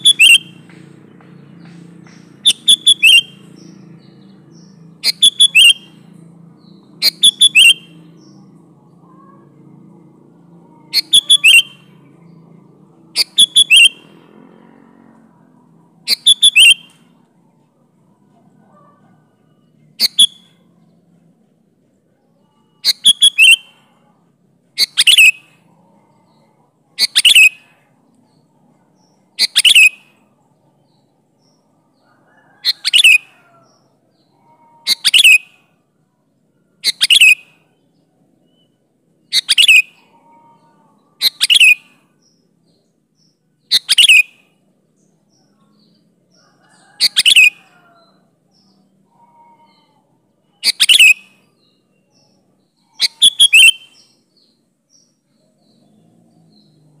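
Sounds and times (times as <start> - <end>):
faint bird chirps: 0.0 - 0.8, 1.6 - 14.7, 15.3 - 57.0
bird calling downward notes: 0.0 - 21.2, 21.8 - 35.9, 36.7 - 57.0.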